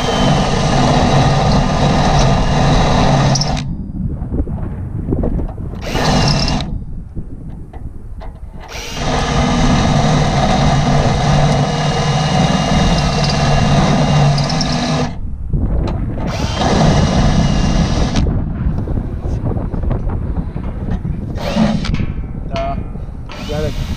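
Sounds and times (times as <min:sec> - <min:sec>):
handheld power tool running: 0:00.0 - 0:03.7, 0:05.8 - 0:06.8, 0:08.6 - 0:15.2, 0:16.2 - 0:18.3, 0:21.4 - 0:22.0, 0:23.3 - 0:23.9.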